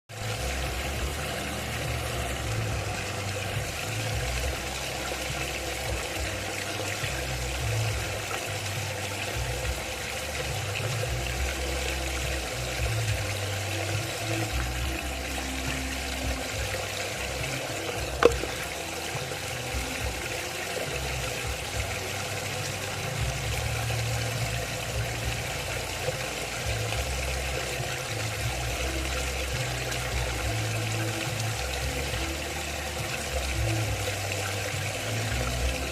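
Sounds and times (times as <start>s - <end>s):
low uneven rumble: 0.2s - 35.9s.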